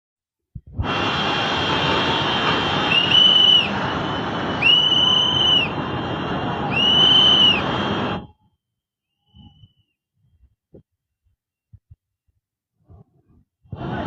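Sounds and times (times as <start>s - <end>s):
high whistle: 1.9s - 5.8s, 6.6s - 10.4s.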